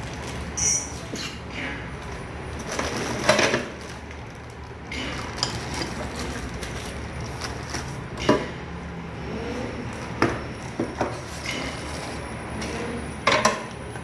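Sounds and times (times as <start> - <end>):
items clattering and rustling: 0.0 - 1.4, 2.0 - 8.5.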